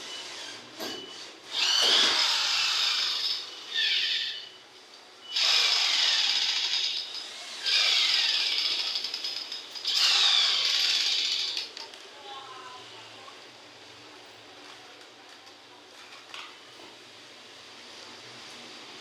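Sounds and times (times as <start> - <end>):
electric rivet gun motor: 5.3 - 11.8.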